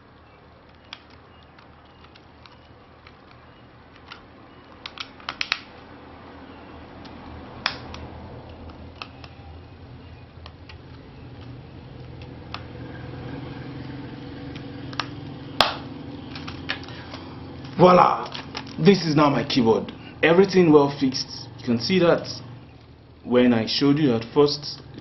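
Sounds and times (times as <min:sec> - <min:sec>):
low steady hum: 0:00.0 - 0:25.0
keyboard keycaps clicking: 0:00.6 - 0:05.8, 0:06.9 - 0:12.8, 0:14.4 - 0:19.0.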